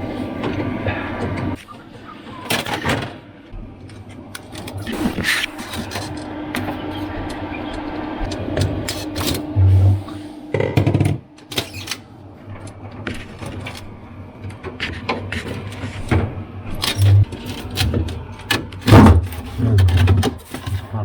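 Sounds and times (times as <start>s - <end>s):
plastic parts clicking and rattling: 16.8s - 21.0s.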